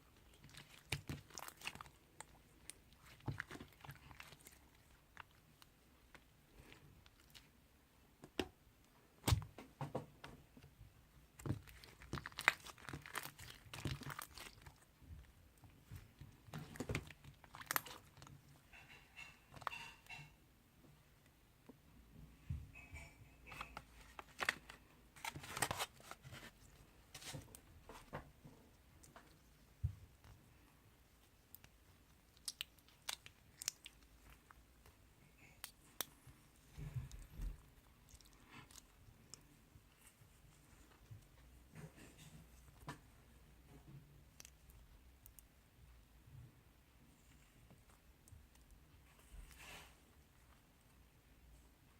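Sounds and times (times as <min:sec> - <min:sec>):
slime squishing and crackling: 0:00.0 - 0:07.5, 0:11.2 - 0:20.2, 0:31.1 - 0:36.1.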